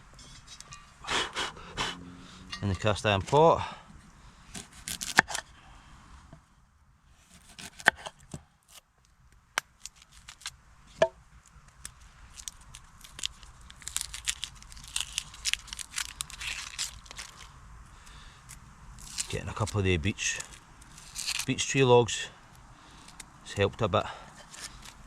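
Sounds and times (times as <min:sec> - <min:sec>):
wood cracking and crackling: 0:09.0 - 0:10.6, 0:11.4 - 0:21.6
rustling: 0:09.8 - 0:21.6, 0:24.3 - 0:25.0.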